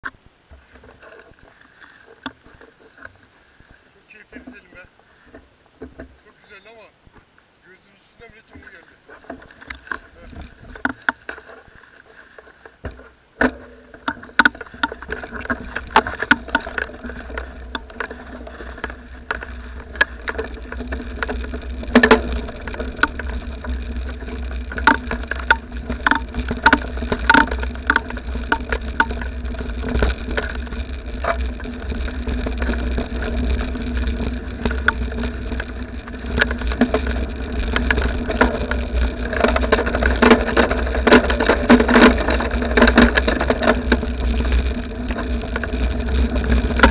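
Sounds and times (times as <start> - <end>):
sharp knocks and rattles: 8.5 - 46.9
vehicle engine running: 13.7 - 46.9.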